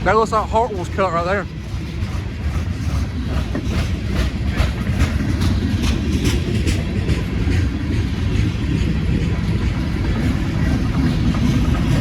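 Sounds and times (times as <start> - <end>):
train wheels rumbling on rails: 0.0 - 12.0
wheels clacking over rail joints: 0.0 - 12.0.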